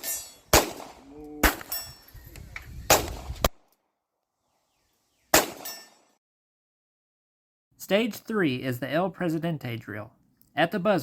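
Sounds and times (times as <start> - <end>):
handgun shots with echo: 0.0 - 1.8, 2.9 - 3.3, 5.3 - 5.9.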